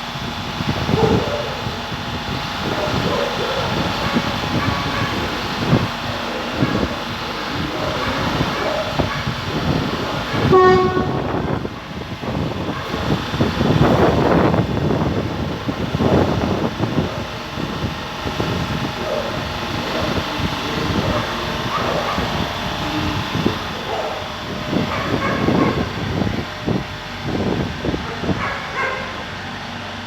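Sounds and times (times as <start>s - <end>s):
train rail rumble and clatter: 0.0s - 30.0s
train horn blast: 3.8s - 12.0s.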